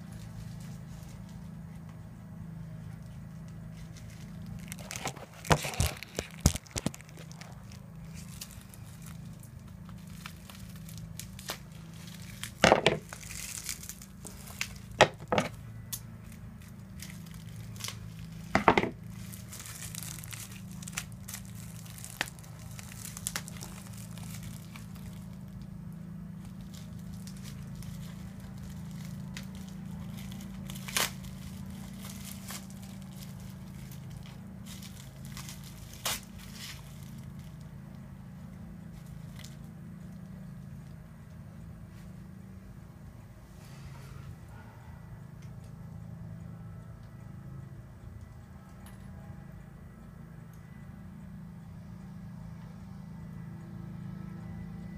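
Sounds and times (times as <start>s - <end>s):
low hum: 0.0s - 54.9s
packing wrap crinkling and tearing: 3.0s - 15.0s, 16.2s - 25.7s, 26.4s - 37.7s.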